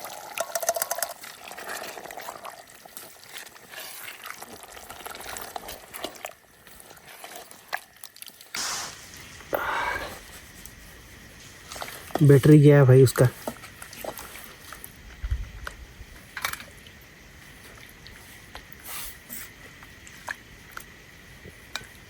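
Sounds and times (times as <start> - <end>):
yogurt pouring into a pot: 0.0 - 9.6
short rushes of noise: 8.6 - 10.2.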